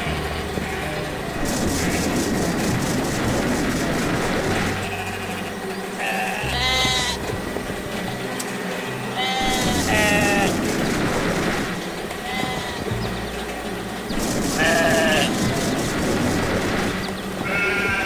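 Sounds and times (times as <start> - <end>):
sheep bleating: 0.0 - 3.8, 4.7 - 7.3, 8.4 - 10.6, 12.2 - 13.0, 14.6 - 16.5, 17.4 - 18.0
background music with bass line: 0.0 - 18.0.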